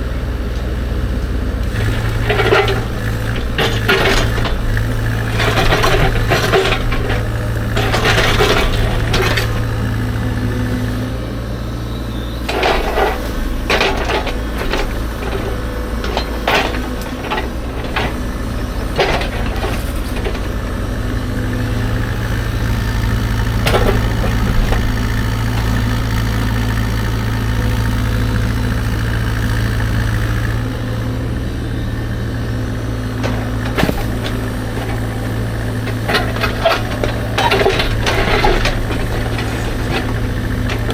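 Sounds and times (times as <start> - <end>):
diesel engine running: 0.0 - 40.9
steel bucket clanking on rock: 1.8 - 9.6, 33.4 - 40.9.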